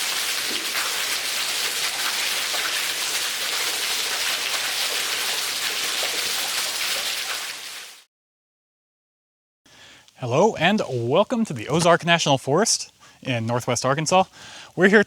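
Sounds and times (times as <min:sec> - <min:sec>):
splashing drops: 0:00.0 - 0:07.9
falling water hissing: 0:00.0 - 0:08.1.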